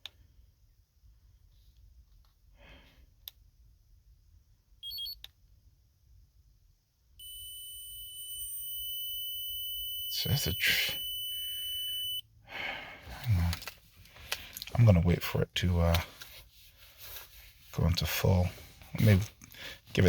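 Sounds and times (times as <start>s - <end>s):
high-pitched electronic buzzer tone: 7.2s - 12.2s
short electronic beep: 7.2s - 12.2s.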